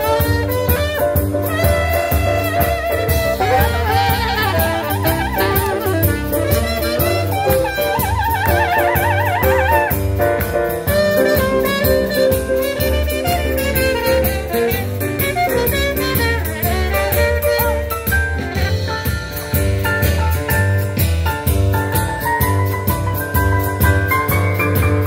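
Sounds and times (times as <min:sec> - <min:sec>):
wind instrument melody with vibrato: 0:00.0 - 0:19.1
piano: 0:00.0 - 0:25.0
swing jazz music: 0:00.0 - 0:25.0
walking bass: 0:00.0 - 0:25.0.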